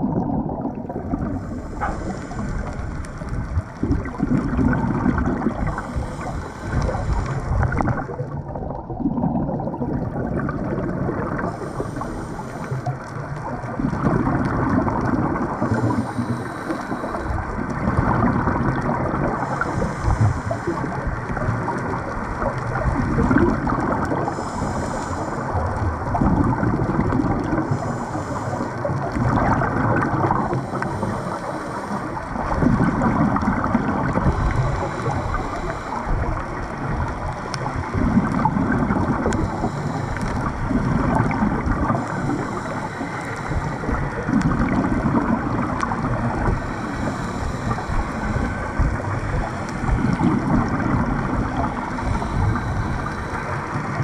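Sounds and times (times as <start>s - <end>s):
exhaled bubbles rumbling: 0.0s - 54.0s
regulator hiss on inhale: 1.3s - 3.5s, 5.6s - 8.0s, 11.4s - 13.1s, 15.6s - 17.5s, 19.2s - 21.4s, 24.1s - 25.7s, 27.5s - 29.0s, 30.2s - 32.5s, 34.1s - 36.7s, 39.2s - 41.3s, 41.9s - 44.8s, 46.0s - 50.2s, 51.3s - 54.0s.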